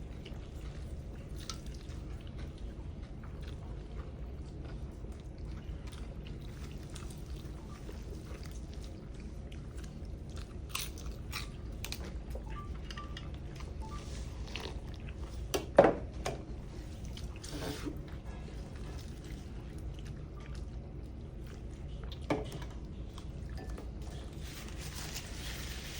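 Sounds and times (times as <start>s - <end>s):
people chewing food: 0.0s - 25.9s.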